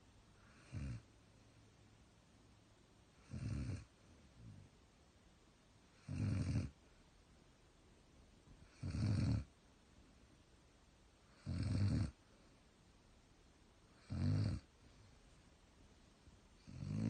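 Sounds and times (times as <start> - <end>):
dog snoring: 0.4 - 1.1, 3.2 - 4.7, 6.0 - 6.8, 8.6 - 9.5, 11.3 - 12.2, 13.9 - 14.7, 16.6 - 17.0.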